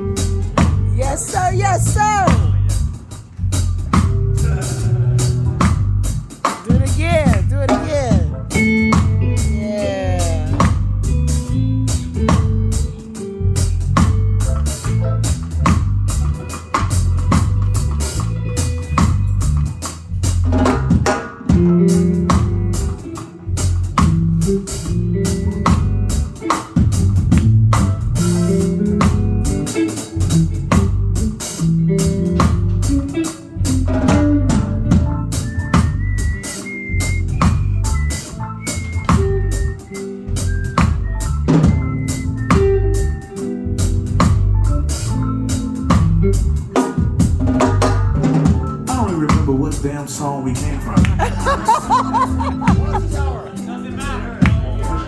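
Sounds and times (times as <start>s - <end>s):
busy bass line: 0.0s - 55.0s
drum kit: 0.0s - 55.0s
live band instrumental groove: 0.0s - 55.0s.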